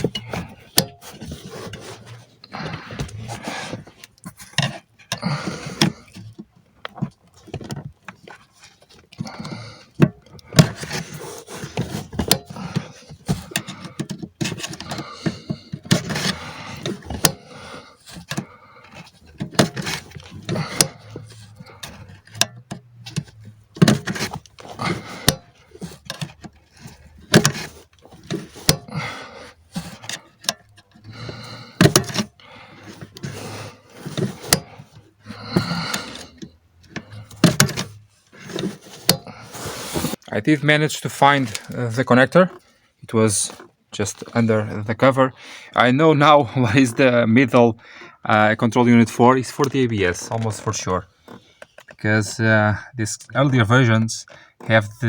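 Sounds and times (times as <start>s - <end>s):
tools clicking and knocking: 0.0s - 17.5s, 18.1s - 29.0s, 29.8s - 39.4s
plastic scraping and rustling: 0.0s - 45.4s, 46.2s - 52.5s.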